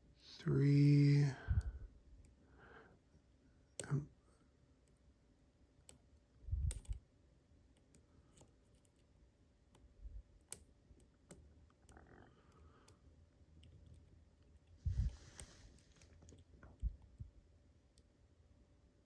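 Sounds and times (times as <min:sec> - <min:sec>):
lock pick clicking and tapping: 0:06.6 - 0:07.0, 0:09.8 - 0:13.0.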